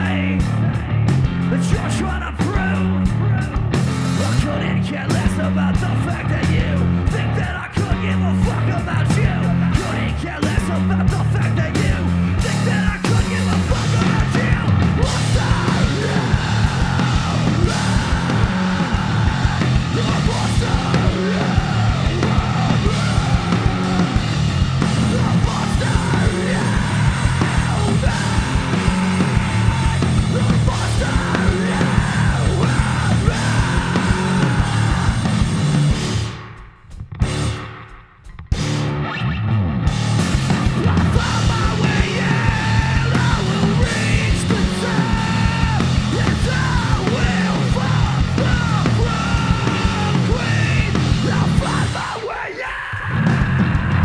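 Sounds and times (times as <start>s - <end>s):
electric guitar: 0.0s - 36.6s, 38.5s - 54.0s
bass guitar: 0.0s - 54.0s
drums: 0.0s - 54.0s
person yelling vocals: 24.9s - 35.2s, 40.8s - 54.0s.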